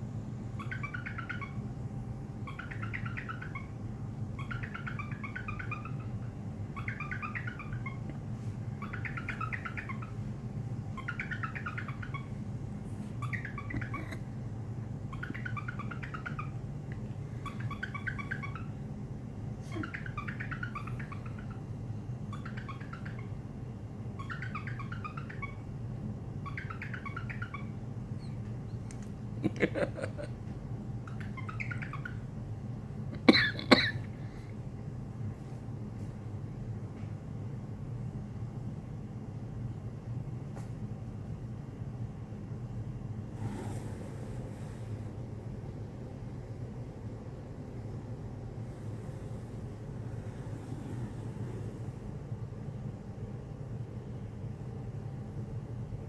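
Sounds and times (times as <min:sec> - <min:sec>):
steady low hum: 0:00.0 - 0:56.0
cockatiel mimicking a ringtone: 0:00.6 - 0:01.6, 0:02.4 - 0:03.7, 0:04.4 - 0:06.2, 0:17.4 - 0:18.7, 0:19.7 - 0:21.6.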